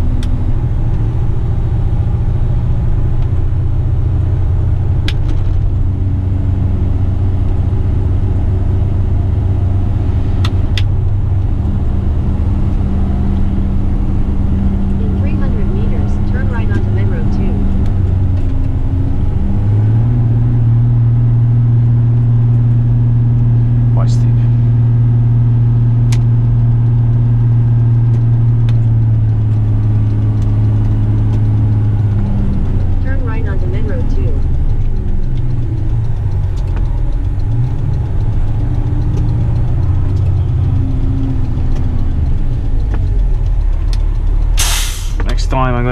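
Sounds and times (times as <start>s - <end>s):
truck diesel engine running: 0.0s - 45.9s
short sharp clicks: 44.6s - 45.3s.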